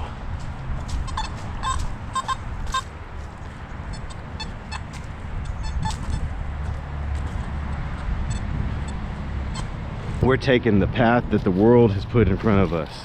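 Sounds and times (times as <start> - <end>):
metal detector beeps: 1.1 - 2.9, 3.9 - 6.2, 8.3 - 9.7.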